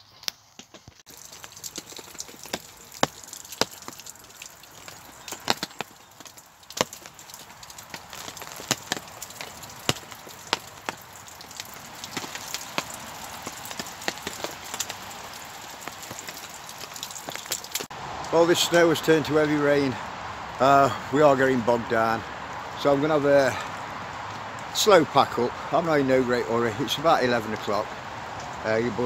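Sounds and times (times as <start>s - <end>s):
sharp taps and cracks: 0.2s - 17.9s.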